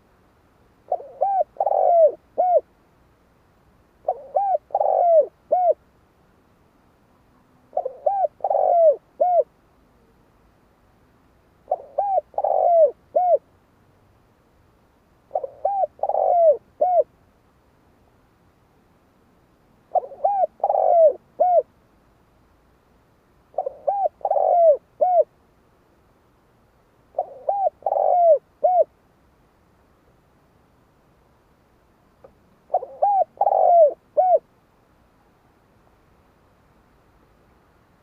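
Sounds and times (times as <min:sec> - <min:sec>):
dove cooing: 0:00.9 - 0:02.7, 0:04.0 - 0:05.8, 0:07.6 - 0:10.2, 0:11.7 - 0:13.4, 0:15.3 - 0:17.1, 0:19.9 - 0:21.7, 0:23.5 - 0:25.3, 0:27.1 - 0:28.9, 0:32.7 - 0:34.4.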